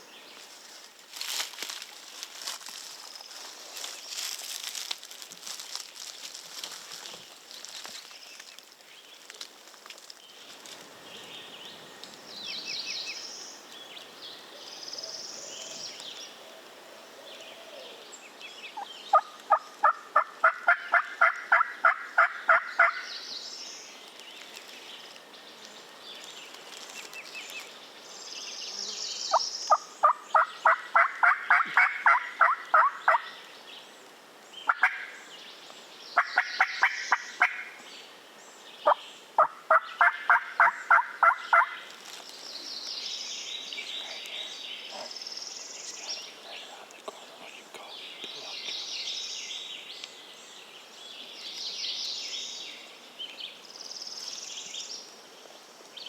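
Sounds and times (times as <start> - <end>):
songbirds singing: 0.0 - 56.0
turkey yelping: 39.4 - 41.8.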